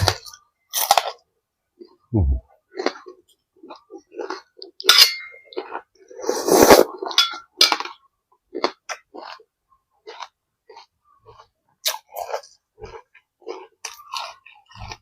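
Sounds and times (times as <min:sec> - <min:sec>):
utensils clinking against dishes: 0:04.9 - 0:05.4.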